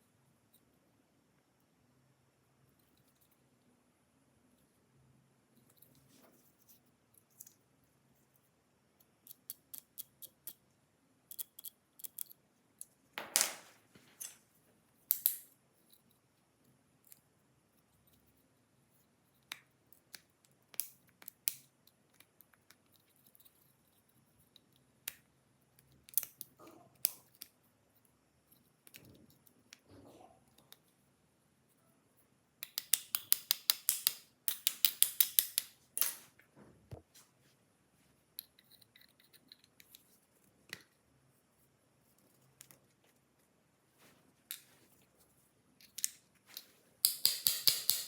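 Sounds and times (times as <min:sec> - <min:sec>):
hand tools clicking on plastic: 0:47.0 - 0:48.0.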